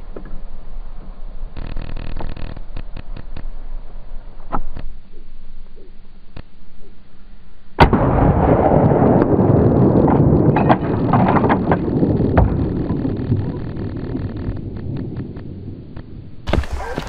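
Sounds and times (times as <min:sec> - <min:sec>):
gunshot: 0:07.8 - 0:14.6, 0:16.5 - 0:17.0.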